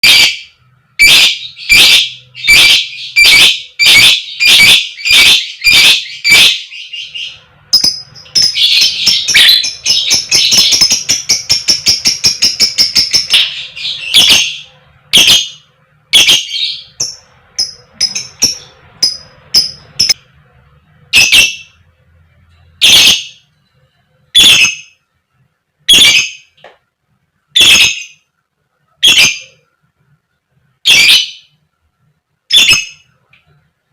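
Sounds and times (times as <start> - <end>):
bird chattering trill: 0.0 - 15.6, 16.2 - 20.2
lovebird harsh calls: 0.0 - 20.2, 21.1 - 21.8, 22.8 - 23.4, 24.3 - 25.0, 25.9 - 26.6, 27.6 - 28.3, 29.0 - 29.6, 30.8 - 31.6, 32.5 - 33.1.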